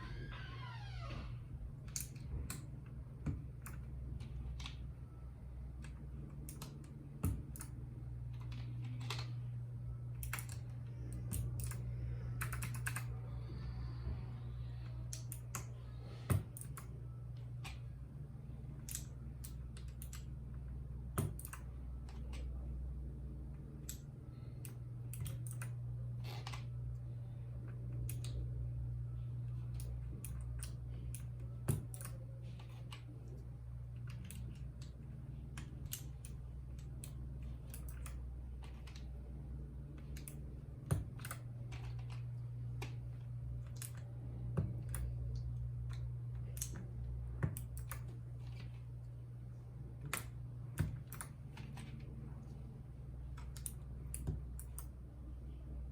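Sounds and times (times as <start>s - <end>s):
steady low hum: 0.0s - 55.9s.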